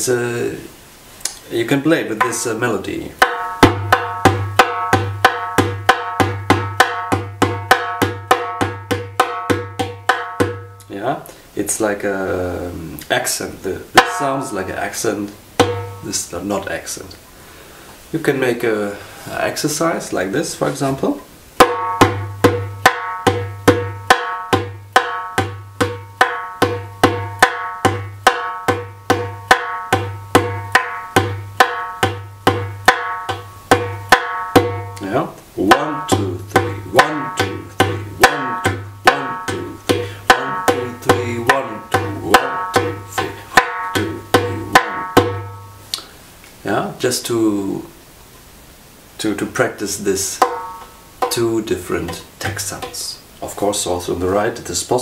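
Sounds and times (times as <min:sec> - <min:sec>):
hand drum strokes: 0:02.2 - 0:10.9, 0:14.0 - 0:16.2, 0:21.6 - 0:46.1, 0:50.4 - 0:53.2.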